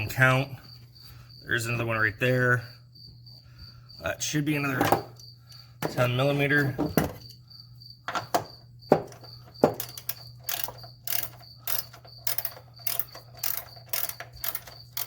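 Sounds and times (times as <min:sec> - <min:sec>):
ratchet wrench clicking: 0:09.2 - 0:15.0.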